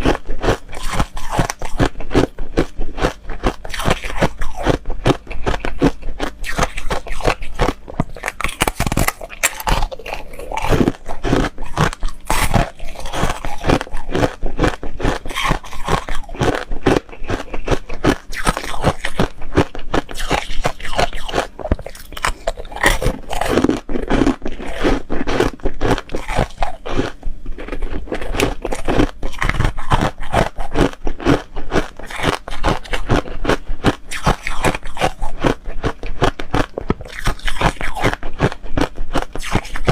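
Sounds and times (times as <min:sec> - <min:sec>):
crunching and chewing ice: 0:00.0 - 0:39.9.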